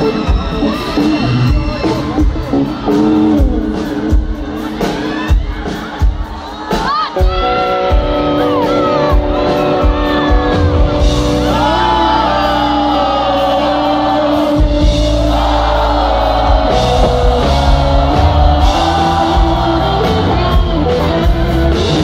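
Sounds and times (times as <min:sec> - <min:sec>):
crowd shouting: 0:00.0 - 0:22.0
live music over loudspeakers: 0:00.0 - 0:22.0
person singing: 0:11.2 - 0:22.0.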